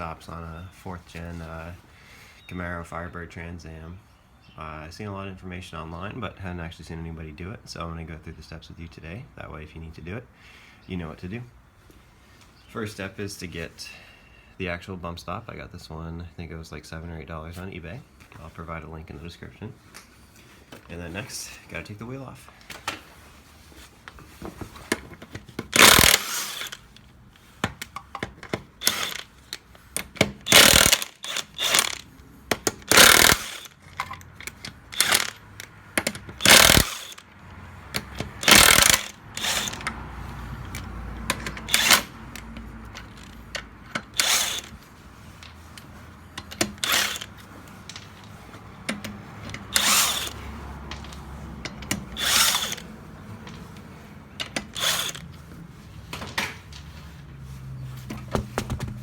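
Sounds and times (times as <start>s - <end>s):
tools ratcheting and clanking: 24.8s - 56.9s
light tool clatter: 40.6s - 59.0s.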